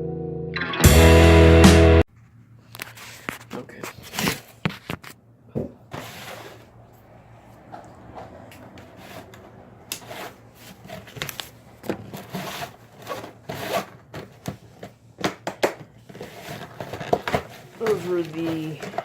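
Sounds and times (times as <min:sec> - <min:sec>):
hands rubbing and scraping parts: 0:07.6 - 0:15.0, 0:15.7 - 0:19.0.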